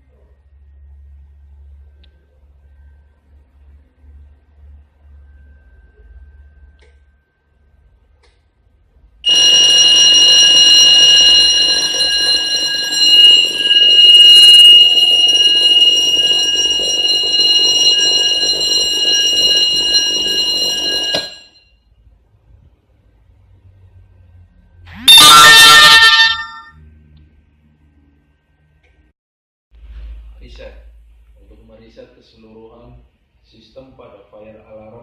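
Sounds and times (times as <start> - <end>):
fire alarm high-pitched tone: 9.2 - 21.6, 25.1 - 26.8.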